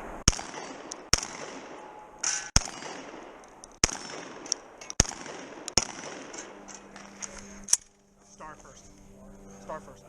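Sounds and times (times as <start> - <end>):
shotgun shots: 0.0 - 7.8.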